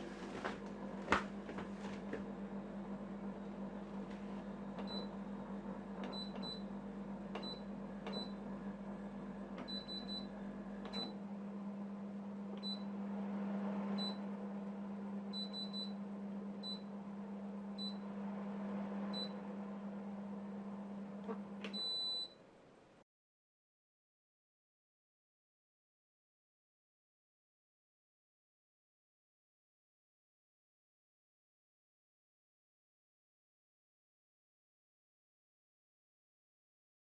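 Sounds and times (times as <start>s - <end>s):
dehumidifier humming: 0.0s - 23.0s.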